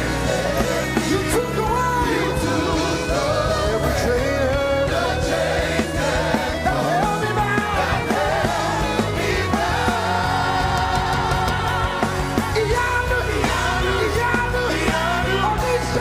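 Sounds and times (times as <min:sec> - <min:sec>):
band playing worship music: 0:00.0 - 0:16.0
heavy bass line: 0:00.0 - 0:16.0.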